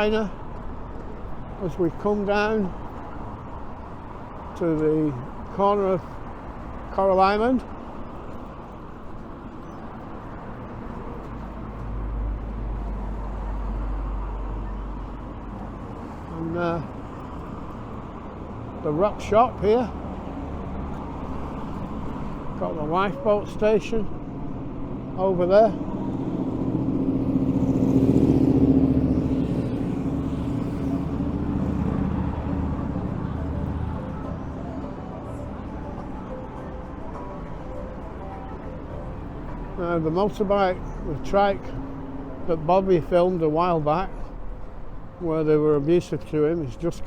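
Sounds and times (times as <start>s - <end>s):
passing vehicles hum: 0.0s - 47.0s
motorcycles riding past: 25.7s - 36.0s.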